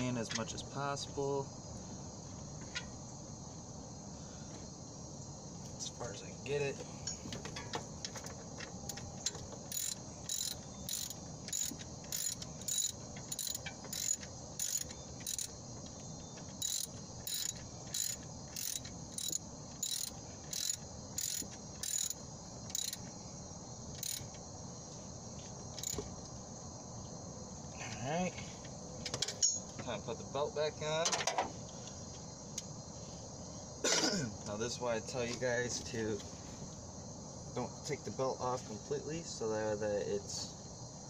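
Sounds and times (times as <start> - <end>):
ratchet wrench clicking: 9.7 - 15.5, 16.6 - 23.0, 24.0 - 24.3, 25.8 - 26.0.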